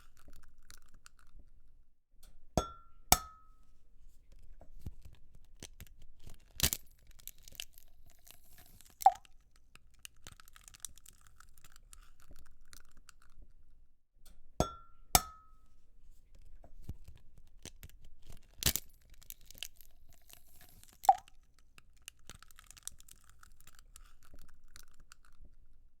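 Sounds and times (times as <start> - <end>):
eggshells crackling: 6.2 - 13.4, 18.2 - 25.4.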